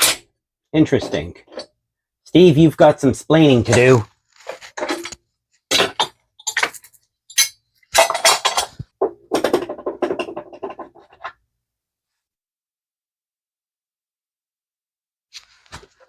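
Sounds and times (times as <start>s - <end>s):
metal parts clinking and clattering: 0.9s - 1.7s, 3.7s - 11.3s.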